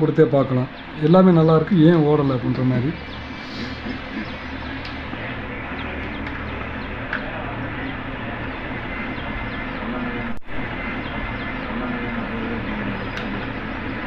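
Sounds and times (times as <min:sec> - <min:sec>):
speaker hiss: 0:00.0 - 0:09.1
mains hum: 0:00.0 - 0:14.0.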